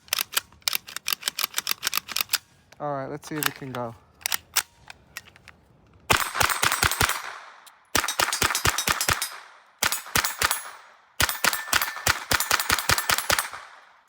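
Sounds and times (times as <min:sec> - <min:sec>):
rapid gunshots: 0:06.1 - 0:13.8.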